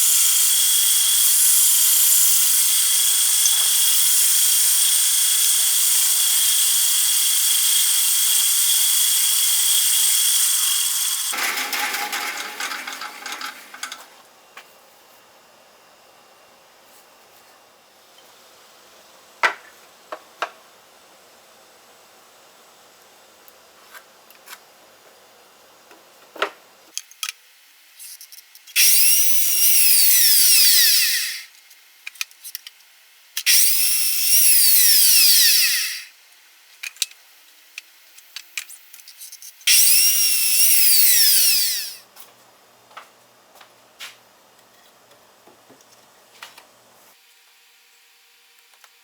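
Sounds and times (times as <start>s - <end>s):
power drill whining: 0.0s - 14.0s, 28.8s - 31.5s, 33.5s - 36.1s, 39.7s - 42.0s
small clicks and knocks: 11.8s - 14.1s.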